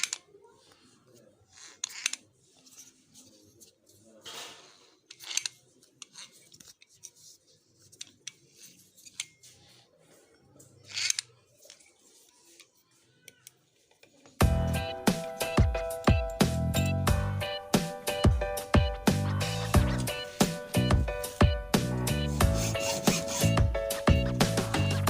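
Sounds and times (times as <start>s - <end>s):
hands scraping and clicking small parts: 0.0s - 0.3s, 1.5s - 3.7s, 5.0s - 9.7s, 10.8s - 12.7s
music: 14.4s - 25.0s.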